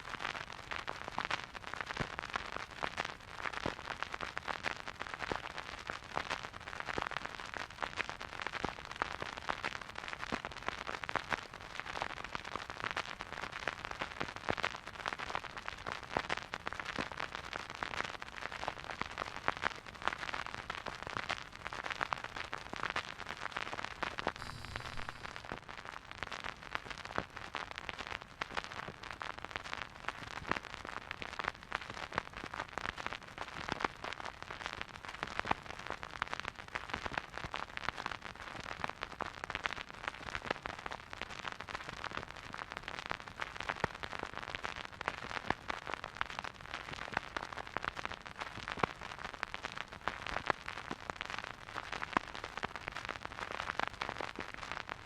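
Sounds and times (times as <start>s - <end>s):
vinyl record crackle: 0.0s - 55.0s
low hum: 24.4s - 25.6s.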